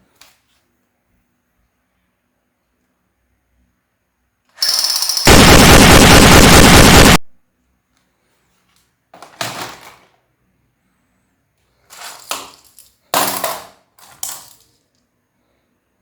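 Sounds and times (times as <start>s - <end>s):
toy gun rapid-fire noise: 4.6s - 7.2s.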